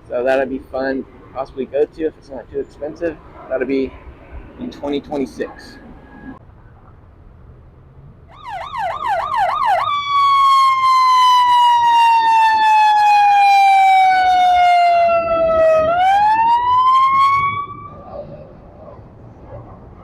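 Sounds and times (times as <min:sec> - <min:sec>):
emergency vehicle siren: 0:08.3 - 0:18.5.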